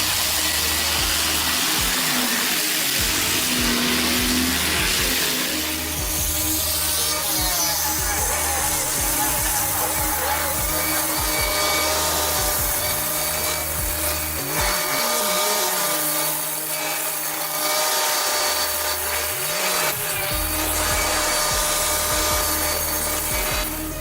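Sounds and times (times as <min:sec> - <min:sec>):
background music: 0:00.0 - 0:24.0
power saw cutting wood: 0:00.0 - 0:24.0.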